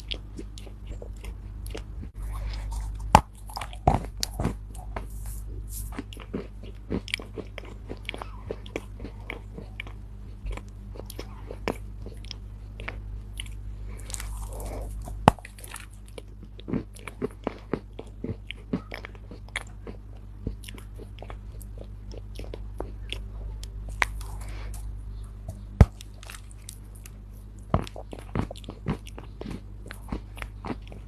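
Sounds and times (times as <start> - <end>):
clay being chewed with crunches: 0.0 - 31.0.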